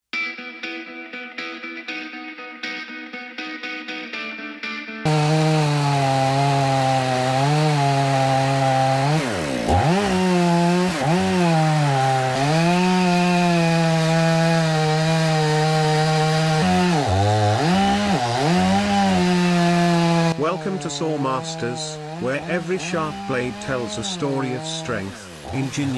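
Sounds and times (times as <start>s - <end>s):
chainsaw cutting wood: 5.0s - 25.9s.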